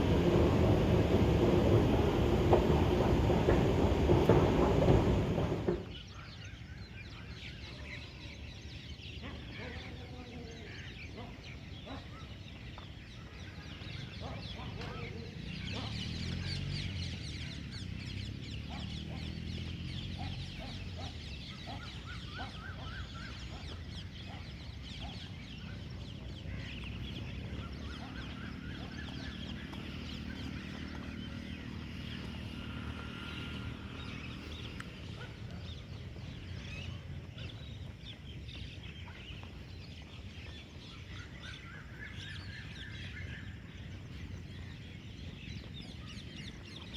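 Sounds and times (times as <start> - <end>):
birds chirping: 0.0 - 6.0.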